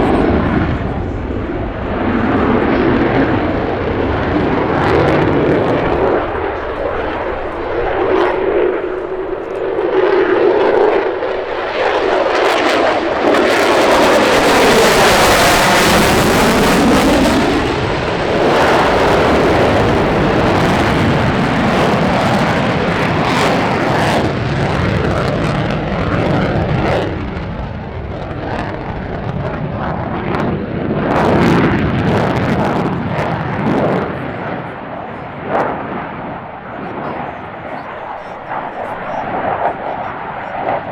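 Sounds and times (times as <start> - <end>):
airplane passing by: 0.0 - 40.9.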